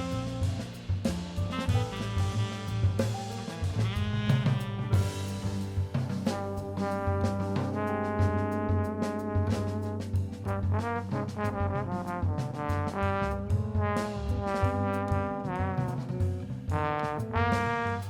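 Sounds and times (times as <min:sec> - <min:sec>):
alto saxophone melody: 0:00.0 - 0:10.9
backing track with bass and drums: 0:00.0 - 0:18.0.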